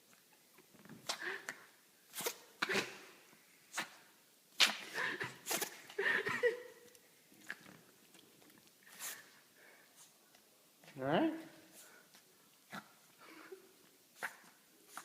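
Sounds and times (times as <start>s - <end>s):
puppy sneezing: 2.1s - 3.1s, 4.6s - 6.0s, 14.2s - 15.0s.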